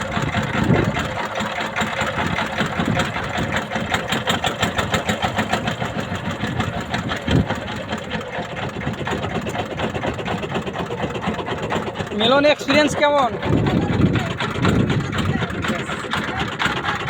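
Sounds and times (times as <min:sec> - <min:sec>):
boat engine chugging: 0:00.0 - 0:17.0.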